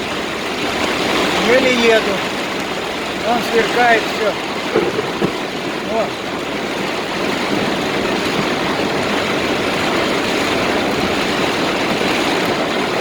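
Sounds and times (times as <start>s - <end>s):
heavy rain on car: 0.0s - 13.0s
car running noise: 2.9s - 13.0s.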